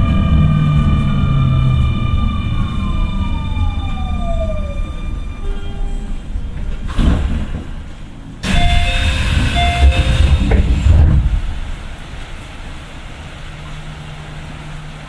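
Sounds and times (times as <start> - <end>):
train wheels rumbling on rail: 0.0 - 15.0
loud rush with steady tones: 8.4 - 15.0.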